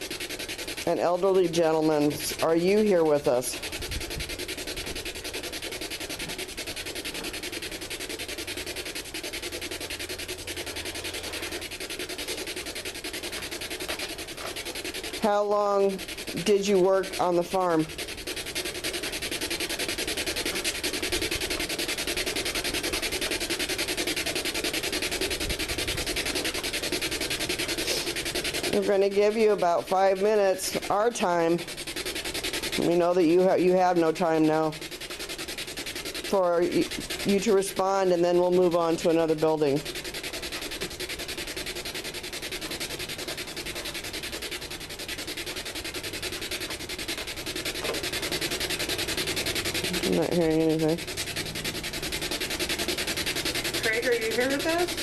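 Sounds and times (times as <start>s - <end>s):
spirit box static sweeping: 0.0s - 55.0s
radio static rapidly chopping: 47.6s - 55.0s.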